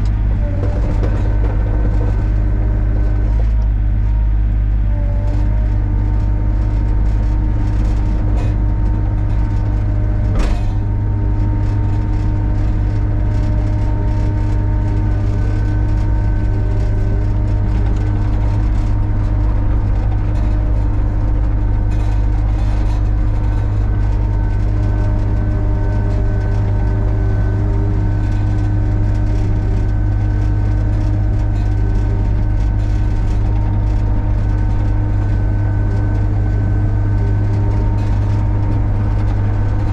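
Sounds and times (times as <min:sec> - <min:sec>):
excavator diesel engine droning: 0:00.0 - 0:39.9.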